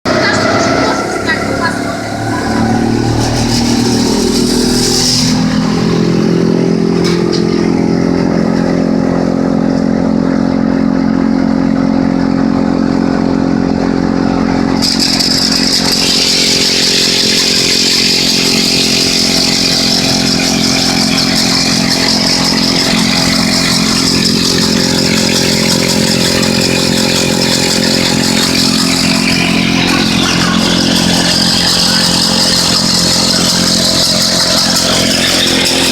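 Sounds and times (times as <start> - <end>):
pencil sharpener motor hum: 14.7 - 35.9.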